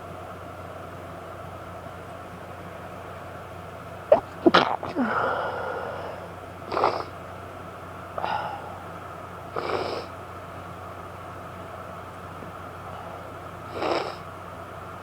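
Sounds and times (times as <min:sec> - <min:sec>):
woman sneezing: 0:04.1 - 0:05.3.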